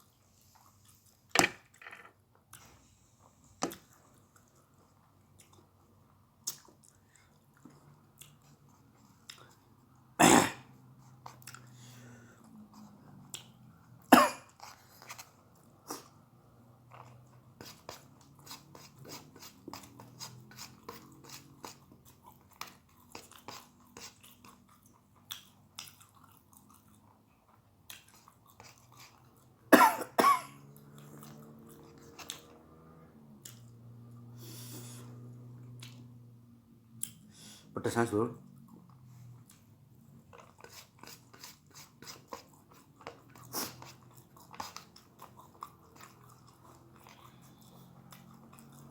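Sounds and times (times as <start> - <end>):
person chewing food: 0.0 - 1.3, 2.4 - 10.2, 10.8 - 29.7, 30.6 - 36.3, 36.9 - 37.3, 38.5 - 48.9
person coughing: 10.2 - 10.7, 14.1 - 14.5, 29.7 - 30.6.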